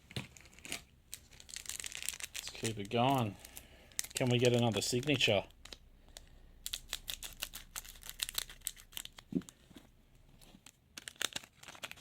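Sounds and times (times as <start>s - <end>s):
foil packet crackling: 0.4s - 5.8s, 6.6s - 9.4s, 10.6s - 12.0s.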